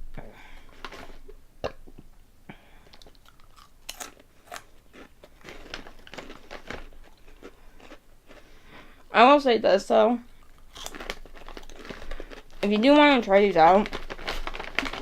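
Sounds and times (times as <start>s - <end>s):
person chewing crunchy snack: 2.8s - 9.1s, 10.3s - 12.6s, 13.9s - 15.0s.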